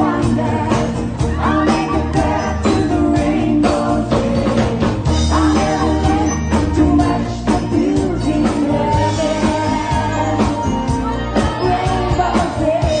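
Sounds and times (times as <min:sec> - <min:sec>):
live rock band playing: 0:00.0 - 0:13.0
steady drums: 0:00.0 - 0:13.0
woman singing: 0:05.3 - 0:13.0.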